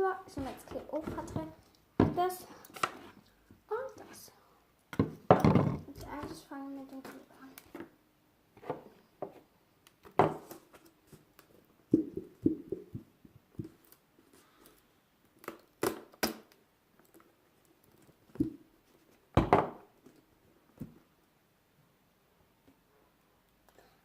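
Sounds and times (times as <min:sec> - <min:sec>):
objects handled and set down: 0:04.9 - 0:06.4, 0:08.6 - 0:11.2.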